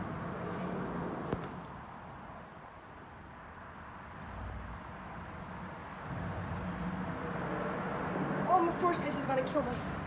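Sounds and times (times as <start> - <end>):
low outdoor rumble: 0.0 - 2.2, 4.2 - 10.0.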